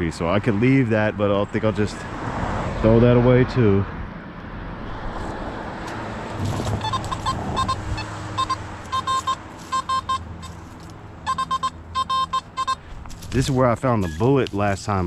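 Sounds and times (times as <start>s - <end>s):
rustle: 5.0s - 7.4s, 8.8s - 11.0s, 12.8s - 15.0s
metal detector beeps: 6.6s - 10.6s, 11.2s - 14.4s.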